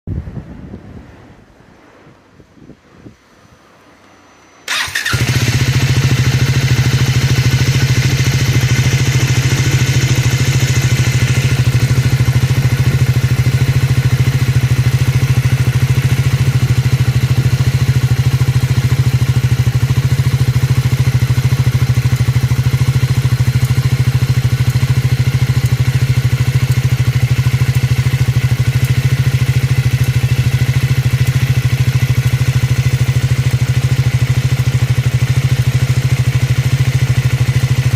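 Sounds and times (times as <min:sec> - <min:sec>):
motorcycle engine idling: 0:04.7 - 0:37.9.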